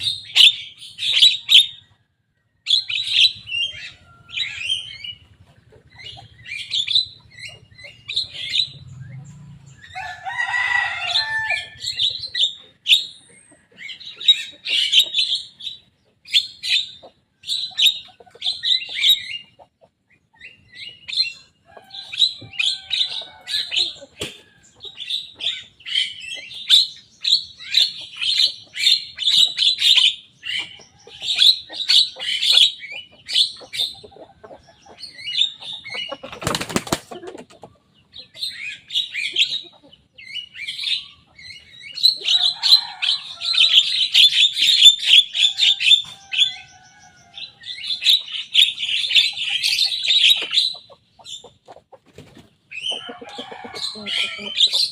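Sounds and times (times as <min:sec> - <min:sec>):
bird chattering calls: 0:00.0 - 0:01.9, 0:02.7 - 0:10.0, 0:11.1 - 0:54.9.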